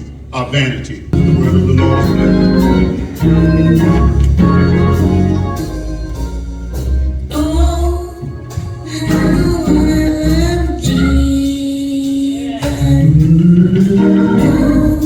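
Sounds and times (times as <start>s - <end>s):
organ playing held chords: 1.1s - 11.9s, 12.5s - 15.0s.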